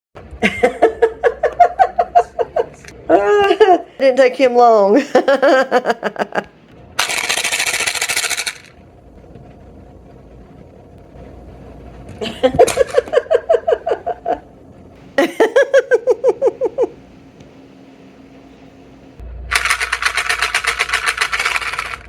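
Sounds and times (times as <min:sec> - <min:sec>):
quick rhythmic laughter: 0:00.4 - 0:04.0, 0:05.0 - 0:08.2, 0:12.2 - 0:14.5, 0:15.2 - 0:17.1
cat treats container rattling: 0:07.0 - 0:08.8, 0:12.4 - 0:13.2, 0:19.5 - 0:22.0.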